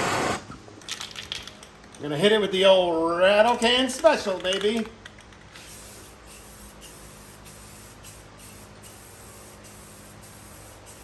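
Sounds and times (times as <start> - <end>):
spray paint can hissing: 5.4 - 11.0.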